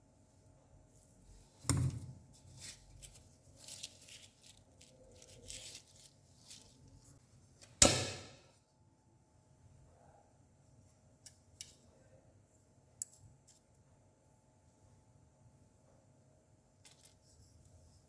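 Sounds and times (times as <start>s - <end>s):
scraping and rustling: 2.3s - 7.2s.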